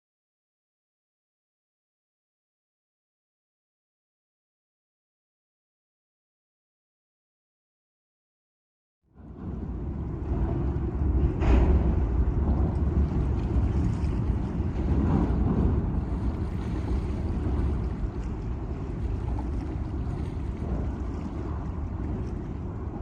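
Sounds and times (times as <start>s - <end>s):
wind buffeting microphone: 9.1s - 23.0s.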